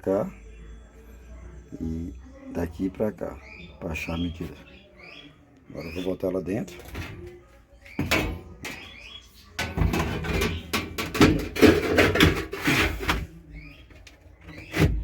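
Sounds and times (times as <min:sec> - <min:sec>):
scraping and rattling knocks: 0:06.6 - 0:15.0
metal panel clacking: 0:08.0 - 0:13.2.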